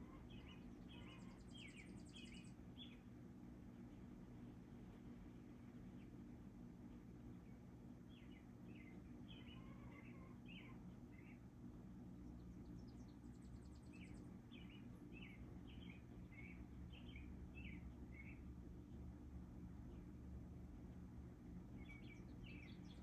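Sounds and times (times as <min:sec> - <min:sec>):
small birds chirping: 0:00.0 - 0:03.1, 0:07.2 - 0:11.5, 0:12.1 - 0:20.8, 0:21.6 - 0:23.0
steady low hum: 0:00.0 - 0:23.0.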